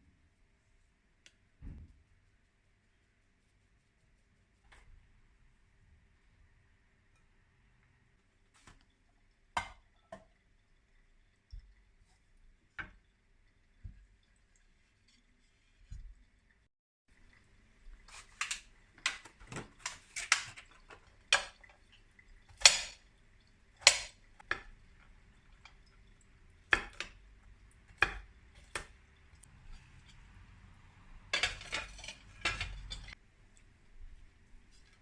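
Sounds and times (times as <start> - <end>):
kitchen utensils and dishes clinking: 18.0 - 21.8, 22.5 - 23.0, 27.9 - 33.2.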